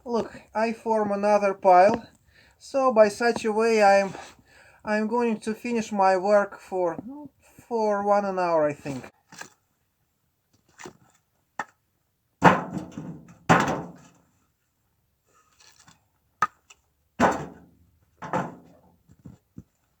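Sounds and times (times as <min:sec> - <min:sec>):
logs thunking onto woodpile: 0:12.4 - 0:14.2, 0:17.2 - 0:19.4.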